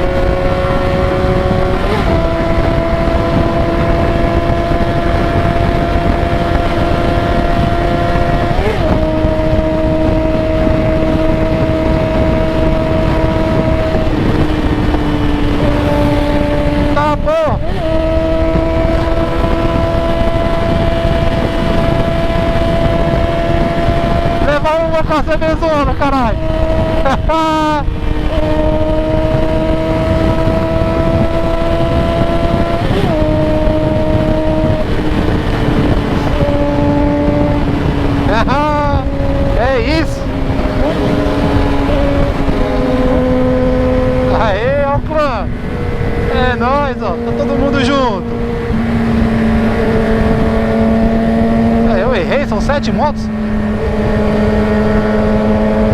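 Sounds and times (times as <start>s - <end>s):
motorcycle engine cruising: 0.0s - 55.9s
wind rush on microphone: 0.0s - 55.9s.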